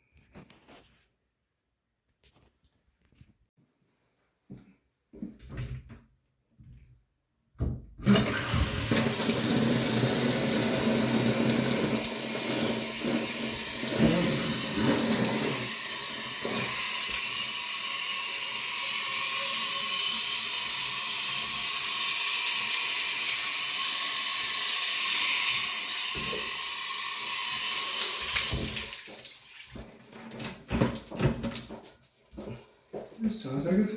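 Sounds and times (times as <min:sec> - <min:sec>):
shower head spraying water: 0:08.2 - 0:29.2.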